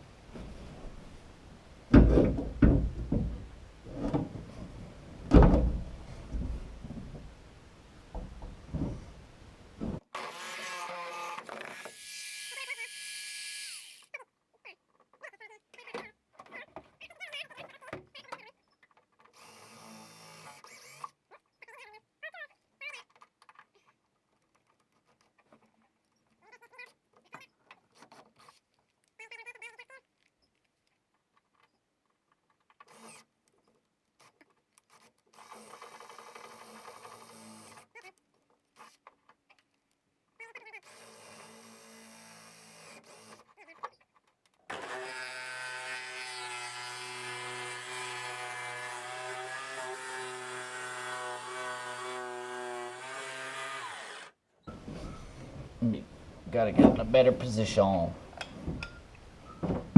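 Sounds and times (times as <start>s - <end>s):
electric power tool running: 10.2s - 14.1s, 44.7s - 54.4s.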